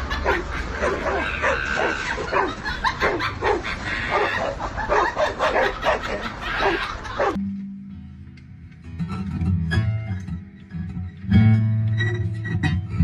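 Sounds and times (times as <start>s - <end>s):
dog yipping and barking: 0.0s - 7.4s.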